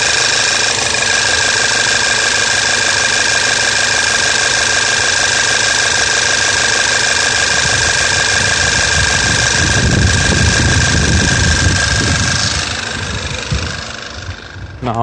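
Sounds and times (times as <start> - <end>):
petrol engine idling: 0.0 - 15.0
high-pitched whine: 6.7 - 15.0.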